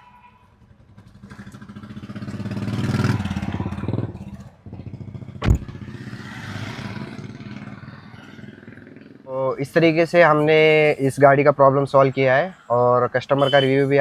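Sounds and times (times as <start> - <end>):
car engine revving: 0.7 - 10.4.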